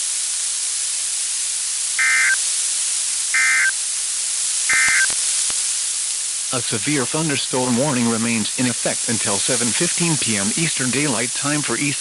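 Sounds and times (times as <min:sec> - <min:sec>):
radio static hiss: 0:00.0 - 0:12.0
warbling data bursts: 0:02.0 - 0:02.4, 0:03.3 - 0:03.8, 0:04.7 - 0:05.6.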